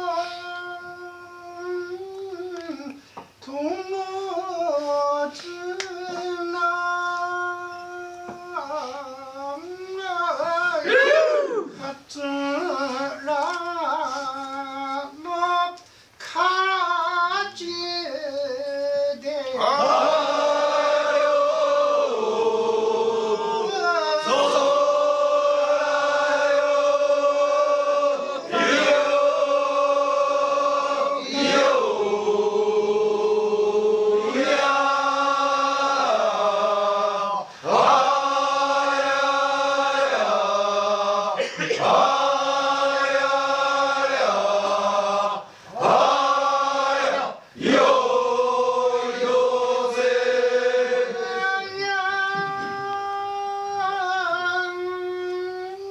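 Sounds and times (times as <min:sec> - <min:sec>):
group of voices chanting: 0:19.6 - 0:51.4.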